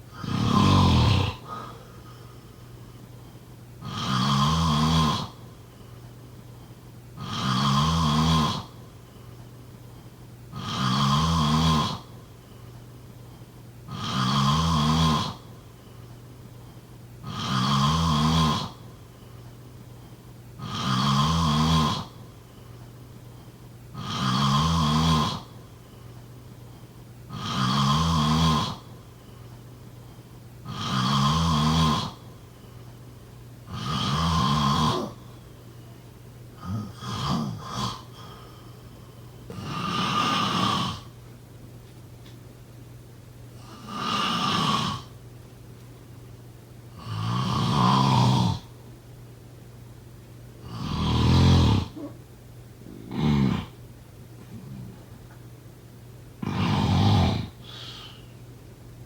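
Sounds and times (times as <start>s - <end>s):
person snoring: 0.1s - 2.4s, 3.8s - 5.4s, 7.2s - 8.8s, 10.5s - 12.1s, 13.9s - 15.5s, 17.2s - 18.8s, 20.6s - 22.2s, 23.9s - 25.6s, 27.3s - 29.0s, 30.6s - 32.7s, 33.7s - 35.4s, 36.6s - 41.1s, 43.6s - 45.1s, 46.9s - 48.7s, 50.6s - 52.2s, 52.8s - 53.8s, 54.4s - 55.1s, 56.4s - 58.3s.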